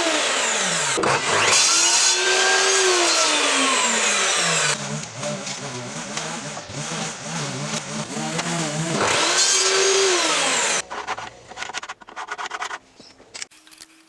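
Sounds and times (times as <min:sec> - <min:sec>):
power tool motor winding: 0:00.0 - 0:05.2, 0:07.7 - 0:10.8.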